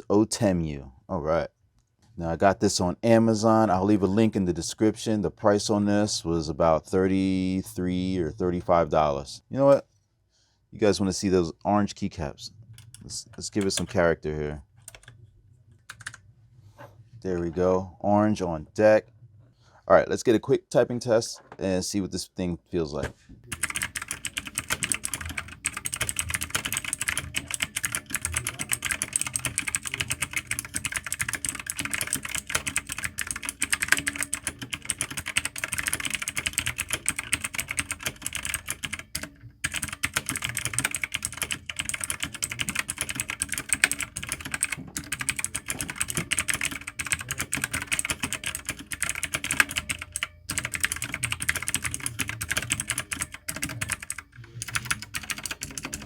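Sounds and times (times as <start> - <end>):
fast typing on mechanical keyboard: 14.9 - 15.1, 15.9 - 16.2, 23.5 - 56.0.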